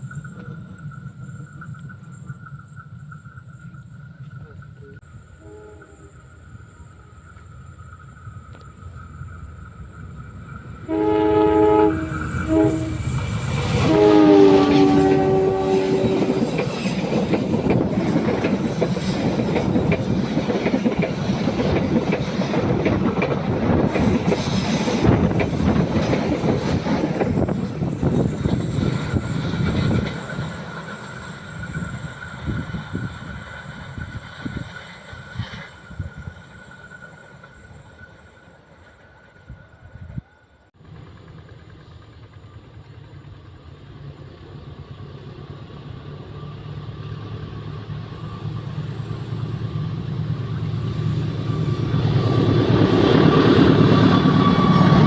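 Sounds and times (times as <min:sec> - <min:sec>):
train horn blasts: 0:04.8 - 0:07.2, 0:10.8 - 0:16.6
train wheels clattering: 0:11.9 - 0:39.0.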